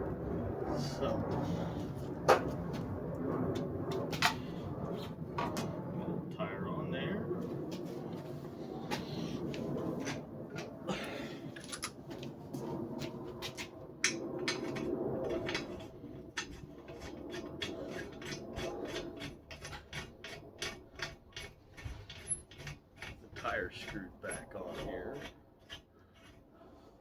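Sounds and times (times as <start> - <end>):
tire rubbing and scraping: 12.1 - 27.0.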